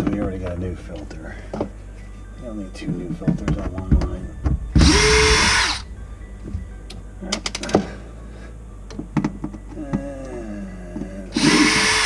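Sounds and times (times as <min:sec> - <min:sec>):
cordless drill whining: 0:04.8 - 0:05.8, 0:11.3 - 0:12.0.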